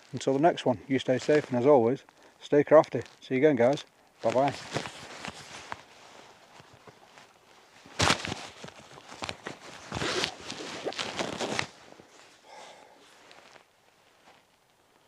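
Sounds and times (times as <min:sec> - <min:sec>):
rustles crunches and knocks: 0:00.0 - 0:12.4, 0:13.0 - 0:14.8.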